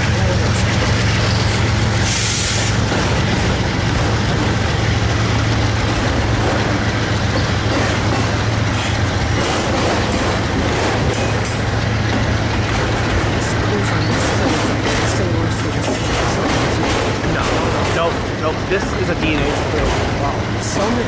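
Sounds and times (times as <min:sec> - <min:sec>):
freight train rumble: 0:00.0 - 0:21.0
train wheels clicking: 0:00.0 - 0:21.0.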